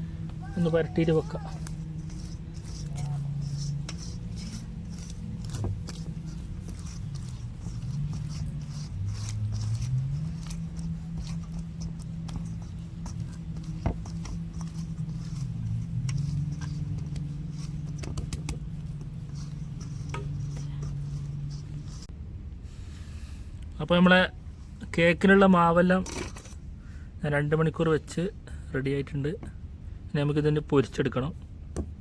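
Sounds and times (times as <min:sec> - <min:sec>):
hands patting oiled dough: 0:00.0 - 0:22.1
steady low hum: 0:00.0 - 0:25.4.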